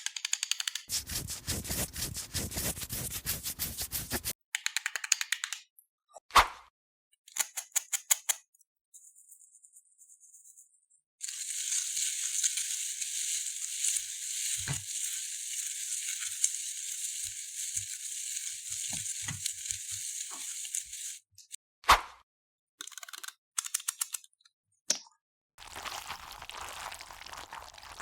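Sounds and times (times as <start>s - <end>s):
small clicks: 0.0s - 0.9s, 4.6s - 5.7s, 22.8s - 24.3s
slime beads crackling: 11.2s - 21.2s, 25.6s - 28.0s.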